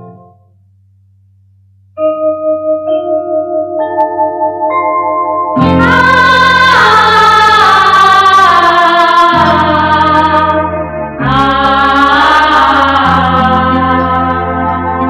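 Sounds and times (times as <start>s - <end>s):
steady bass line: 0.0s - 15.0s
wordless choir holding chords: 4.4s - 15.0s.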